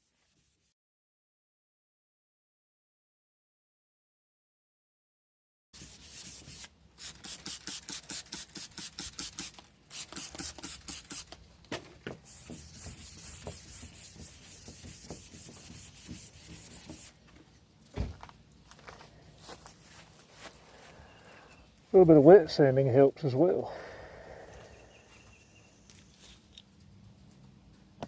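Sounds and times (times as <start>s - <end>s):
sandpaper scrubbing boat hull: 5.8s - 11.3s, 12.1s - 17.2s.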